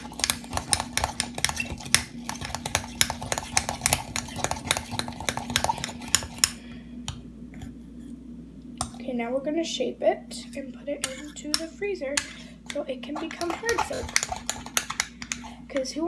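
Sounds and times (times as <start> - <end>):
utensil scraping against bowl: 0.0 - 6.6, 11.0 - 16.0.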